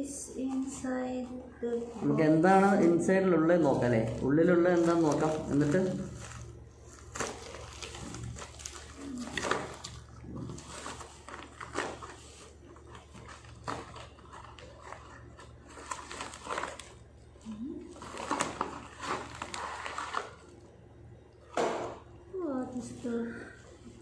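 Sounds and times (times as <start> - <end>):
low steady hum: 0.0 - 24.0
packaging crinkling and rustling: 3.5 - 20.7.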